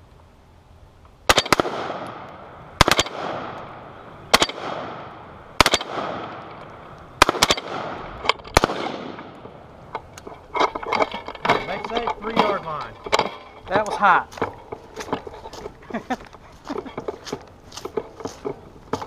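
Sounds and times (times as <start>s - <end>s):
rifle shots echoing: 1.3s - 9.8s.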